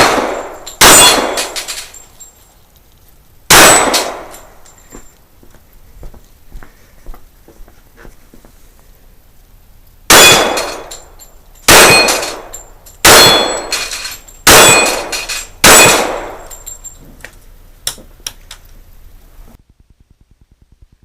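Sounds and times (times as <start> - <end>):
pistol shots echoing: 0.0 - 1.8, 3.5 - 4.5, 10.1 - 11.1, 11.7 - 16.5.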